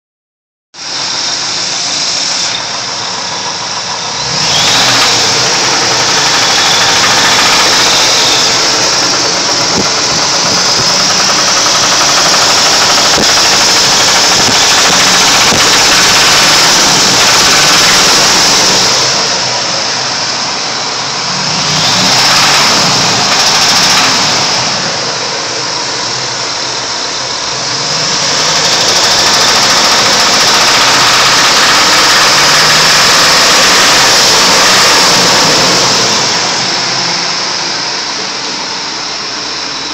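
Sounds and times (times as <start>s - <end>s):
engine running with knock: 1.2s - 20.4s, 21.4s - 39.9s.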